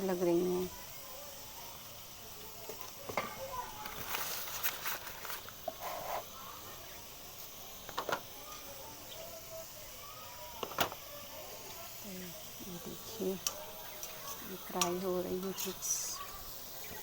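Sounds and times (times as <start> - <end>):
chips sizzling in hot oil: 0.0 - 17.0
oil popping: 2.4 - 9.4, 10.6 - 11.9.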